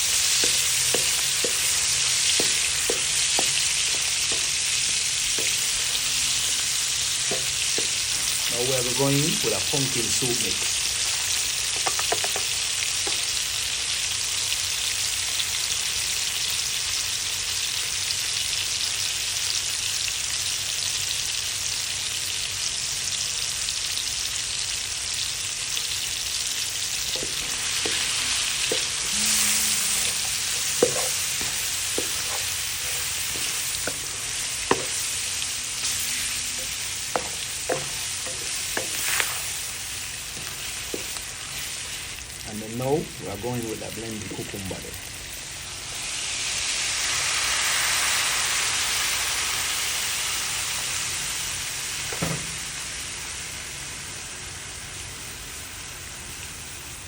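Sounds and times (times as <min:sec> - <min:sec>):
seasonings sizzling in oil: 0:00.0 - 0:57.0
pan stirring clicks and knocks: 0:11.8 - 0:12.5, 0:30.1 - 0:34.1.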